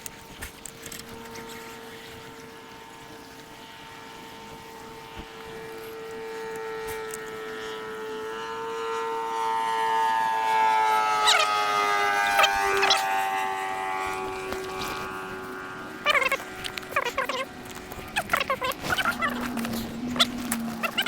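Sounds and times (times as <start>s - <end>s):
propeller aircraft flying over: 0.0s - 21.0s.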